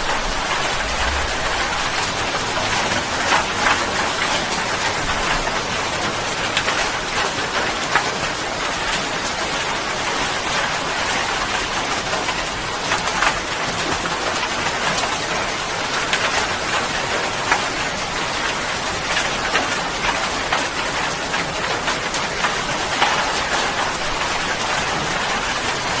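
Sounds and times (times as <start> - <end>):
steady rain hiss: 0.0 - 26.0.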